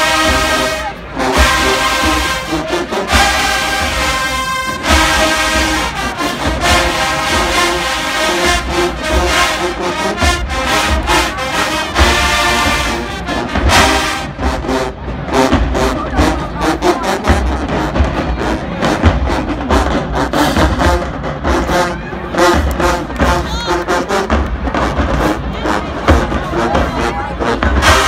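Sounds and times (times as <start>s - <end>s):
marching band playing: 0.0s - 28.0s.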